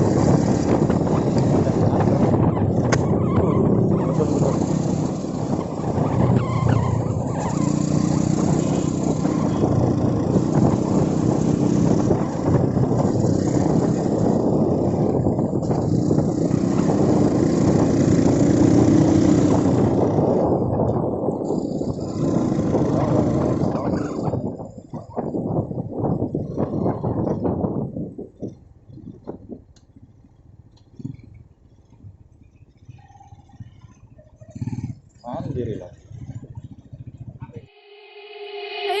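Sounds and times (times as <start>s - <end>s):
motorcycle engine running: 0.0s - 27.5s
road and wind noise: 0.0s - 39.0s.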